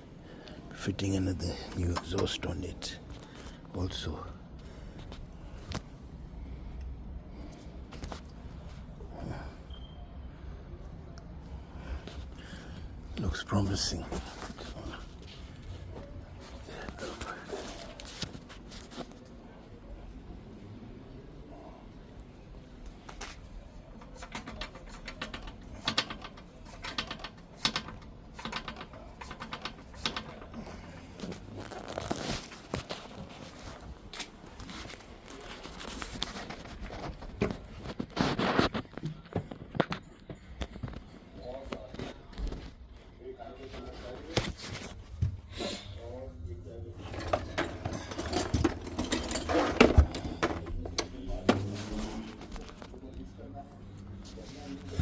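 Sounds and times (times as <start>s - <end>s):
hand tools clicking and knocking: 24.1s - 30.7s, 47.0s - 51.7s
metal scraping rattle: 47.0s - 52.2s.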